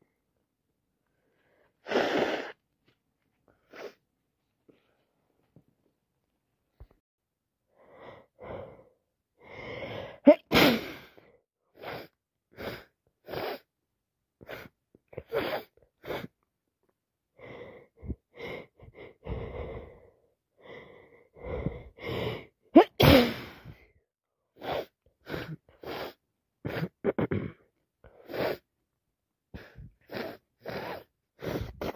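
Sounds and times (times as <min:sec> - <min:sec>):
short sniffs: 0:01.8 - 0:02.6, 0:24.6 - 0:26.9, 0:29.6 - 0:31.9
woman sneezing: 0:10.3 - 0:11.1, 0:22.8 - 0:23.8
gasping breaths: 0:17.4 - 0:22.6, 0:29.6 - 0:31.9.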